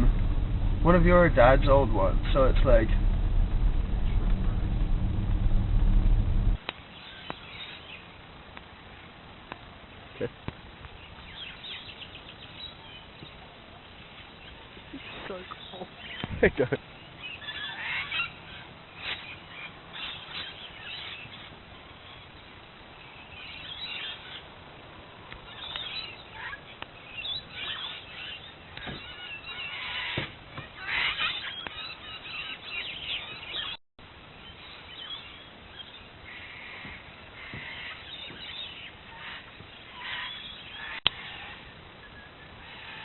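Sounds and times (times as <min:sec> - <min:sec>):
birds calling: 0:10.9 - 0:24.6, 0:25.3 - 0:33.8, 0:34.4 - 0:43.0.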